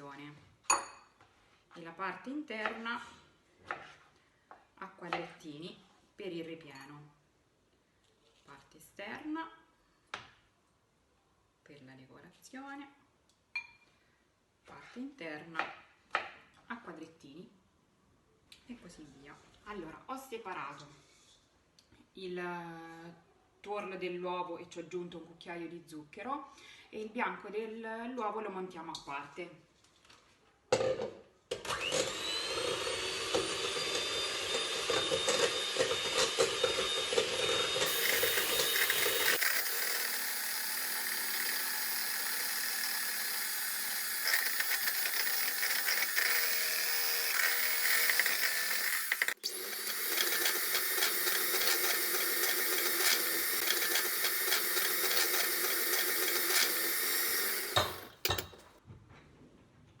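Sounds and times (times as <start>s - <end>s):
electric hand mixer whirring: 31.6s - 58.6s.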